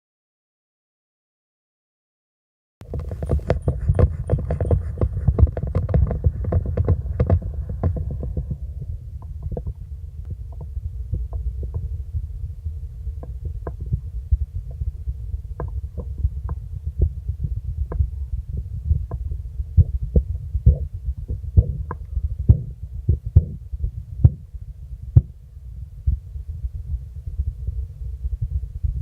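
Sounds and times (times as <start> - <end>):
pulse tapping through stethoscope: 2.8 - 8.6, 15.6 - 17.2, 17.9 - 23.6
low rumble: 2.8 - 29.0.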